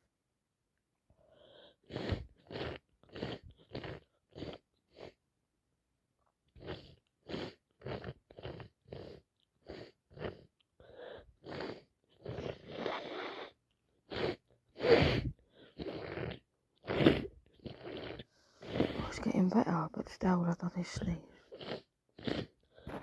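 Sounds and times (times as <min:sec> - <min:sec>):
person sniffing through blocked nose: 0:01.4 - 0:05.2, 0:06.6 - 0:10.4, 0:11.0 - 0:19.1, 0:21.4 - 0:23.0
breaths through the nose: 0:06.6 - 0:19.1.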